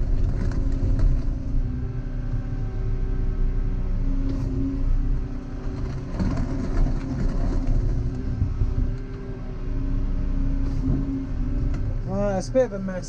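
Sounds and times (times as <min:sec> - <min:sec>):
knocks and crackles: 0:00.0 - 0:01.5, 0:05.5 - 0:09.2
excavator diesel engine running: 0:00.0 - 0:13.0.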